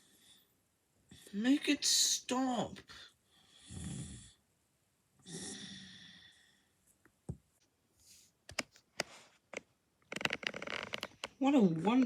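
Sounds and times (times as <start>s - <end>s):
person snoring: 5.2s - 6.4s.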